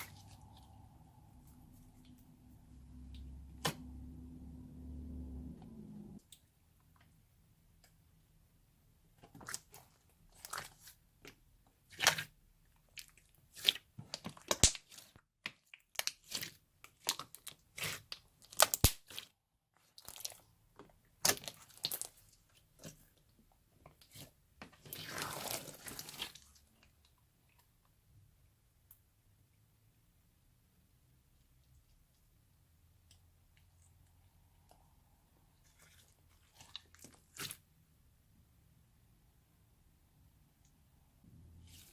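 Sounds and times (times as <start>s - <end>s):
slime squelching: 0.0s - 6.6s, 9.1s - 27.8s, 33.0s - 37.8s, 41.4s - 41.9s.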